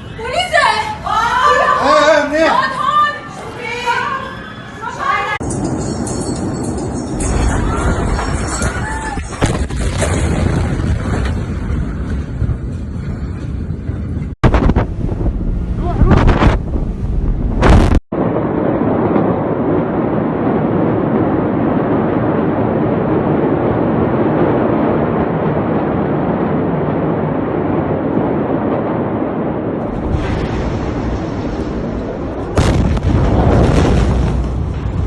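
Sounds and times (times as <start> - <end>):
loud explosion blast: 7.0 - 13.1, 14.4 - 35.0.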